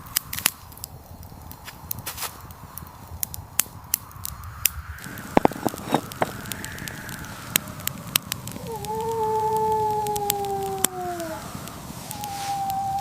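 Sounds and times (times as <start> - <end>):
sharp crackles: 0.0 - 13.0
steady rushing noise: 3.7 - 8.7, 10.8 - 13.0
animal howling: 5.0 - 7.7, 8.4 - 13.0.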